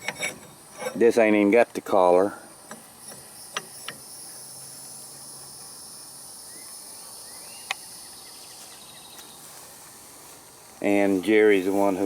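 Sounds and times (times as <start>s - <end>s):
high-pitched insect drone: 2.4s - 9.6s.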